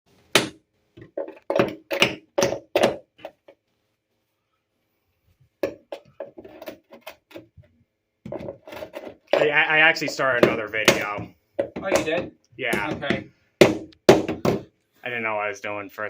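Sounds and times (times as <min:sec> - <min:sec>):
hammer knocking on wood: 0:09.3 - 0:14.7.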